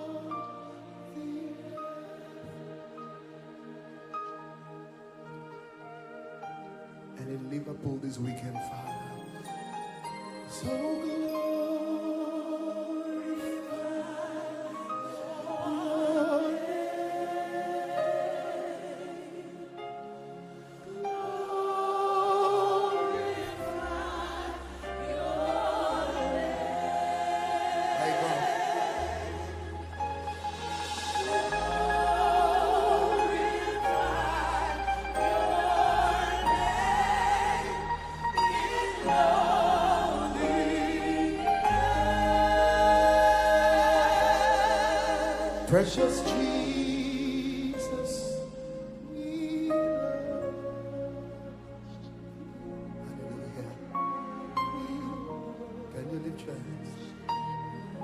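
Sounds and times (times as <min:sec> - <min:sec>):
sustained gospel chords: 0:00.0 - 0:58.0
bass: 0:29.0 - 0:56.4.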